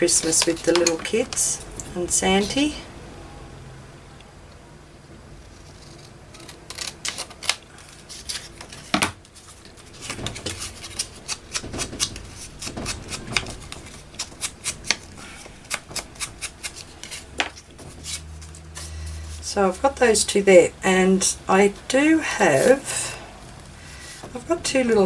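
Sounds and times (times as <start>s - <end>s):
scissors snipping paper: 5.6s - 8.8s, 10.0s - 18.2s.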